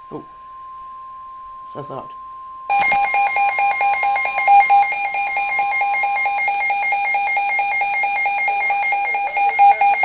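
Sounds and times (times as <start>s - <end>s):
steady warning tone: 0.0s - 10.0s
weather radio alarm beeping: 2.7s - 10.0s.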